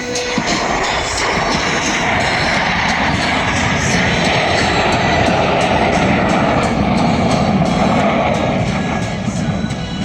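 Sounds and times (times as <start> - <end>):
jet engines roaring: 0.0 - 10.0
music with drum beat over loudspeakers: 0.0 - 10.0.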